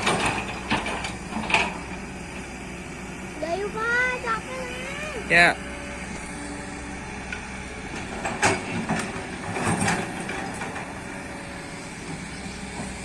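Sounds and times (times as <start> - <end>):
sharp clanks and knocks: 0.0 - 2.2, 7.2 - 11.2
excavator diesel engine running: 0.0 - 13.0.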